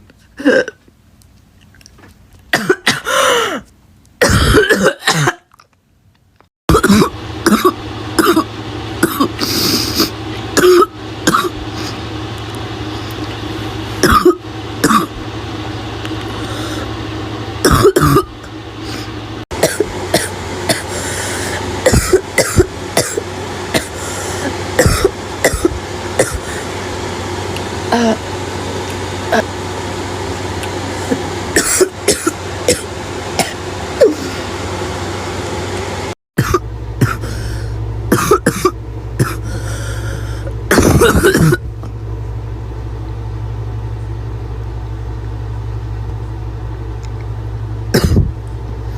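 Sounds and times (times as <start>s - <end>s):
low background hum: 0.0s - 48.9s
girl coughing harshly: 2.6s - 5.5s, 6.7s - 11.5s, 14.0s - 15.1s, 17.6s - 18.3s, 19.6s - 20.9s, 21.8s - 24.0s, 24.8s - 26.6s, 31.6s - 32.8s, 33.4s - 34.2s, 36.4s - 37.3s, 38.1s - 39.5s, 40.7s - 41.6s, 48.0s - 48.3s.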